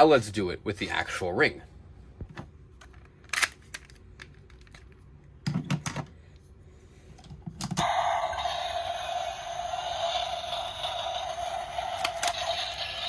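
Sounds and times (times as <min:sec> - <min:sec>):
steady noisy sound: 0:07.8 - 0:13.0
plastic toy parts clicking: 0:11.5 - 0:13.0.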